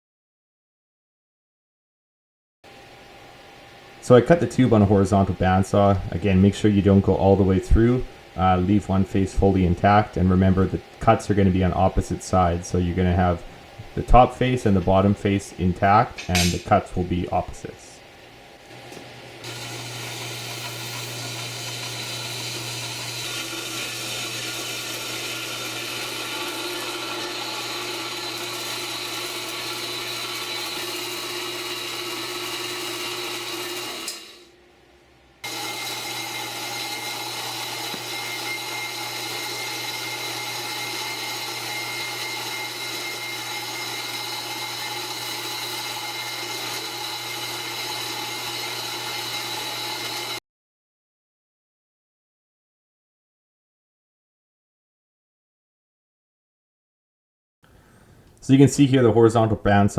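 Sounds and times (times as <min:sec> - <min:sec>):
bandsaw cutting steel: 0:04.1 - 0:17.6, 0:18.6 - 0:34.6, 0:35.4 - 0:50.4.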